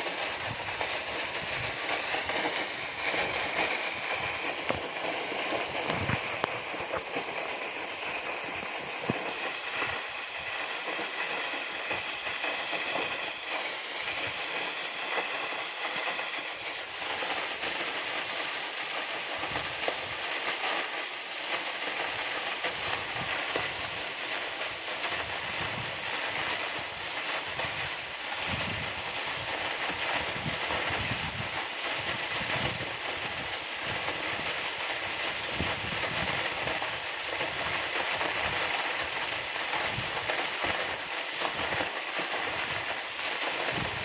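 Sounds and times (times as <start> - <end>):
waterfall rushing: 0.0 - 23.2.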